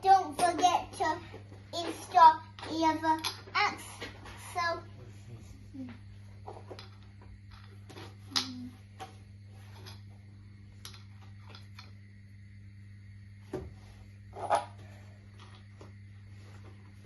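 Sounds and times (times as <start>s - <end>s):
steady low hum: 0.0s - 17.0s
small parts clicking and knocking: 1.8s - 3.6s, 6.4s - 8.6s, 10.8s - 12.0s.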